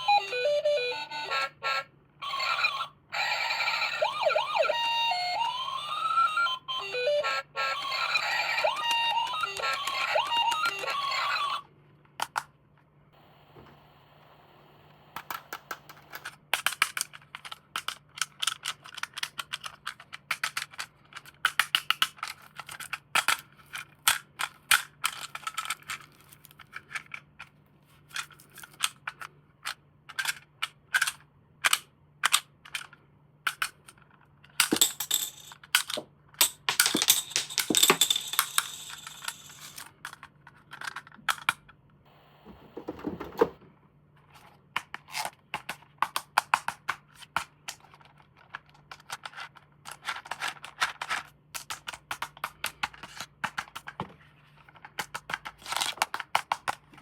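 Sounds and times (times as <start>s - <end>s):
plastic clicks and crackles: 15.2s - 34.9s.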